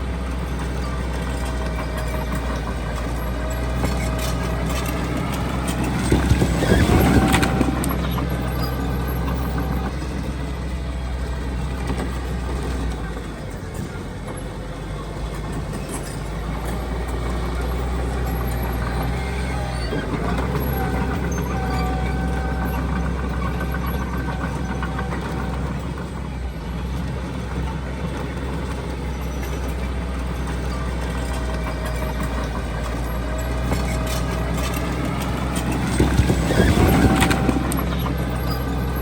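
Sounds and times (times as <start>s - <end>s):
diesel machinery running: 0.0s - 39.0s
clanking knocks: 0.8s - 9.9s, 30.5s - 39.0s.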